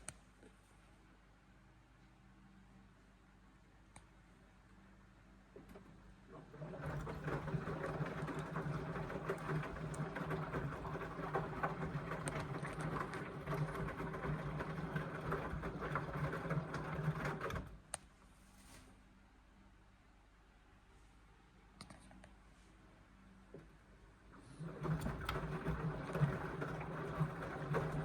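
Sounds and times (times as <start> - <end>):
washing machine motor humming: 5.7 - 17.9, 24.3 - 28.0.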